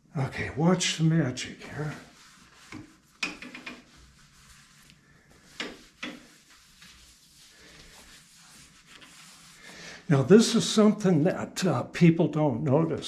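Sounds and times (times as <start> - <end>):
rag rubbing on metal: 1.6 - 9.7.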